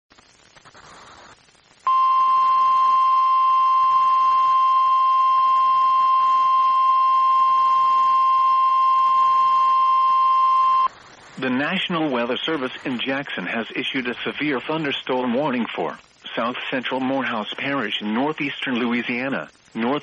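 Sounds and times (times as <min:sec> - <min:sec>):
high alarm beep: 0:01.9 - 0:10.9.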